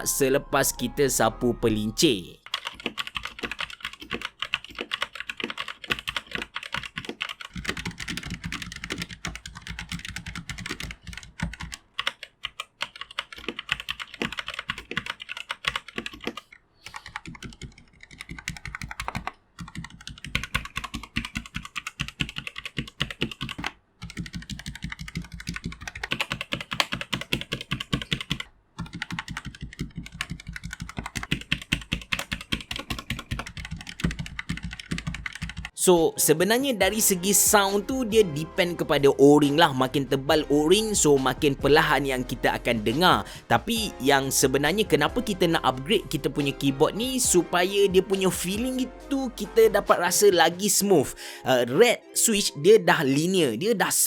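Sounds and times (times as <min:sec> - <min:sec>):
typing on mechanical keyboard: 0:02.4 - 0:35.8.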